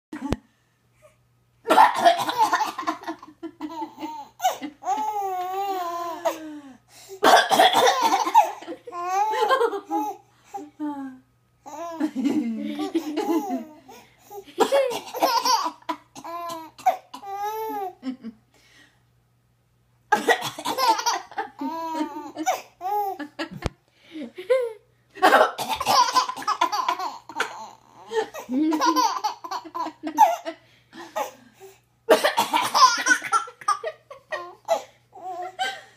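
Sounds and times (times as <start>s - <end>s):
woman coughing: 1.7s - 3.1s, 7.2s - 8.5s, 14.6s - 15.5s, 20.1s - 21.1s, 25.2s - 26.6s, 32.1s - 32.8s
baby laughing: 1.8s - 6.4s, 7.8s - 10.2s, 12.7s - 13.9s, 14.6s - 18.0s, 20.4s - 23.3s, 25.6s - 30.5s, 32.4s - 35.7s.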